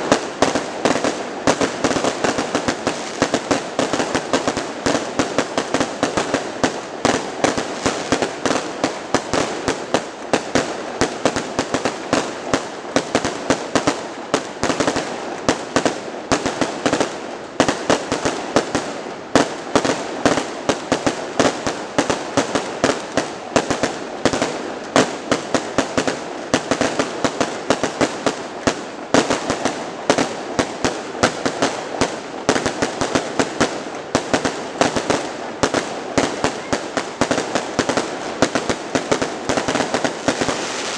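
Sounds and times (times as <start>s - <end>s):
fireworks bangs and crackles: 0.0s - 40.9s.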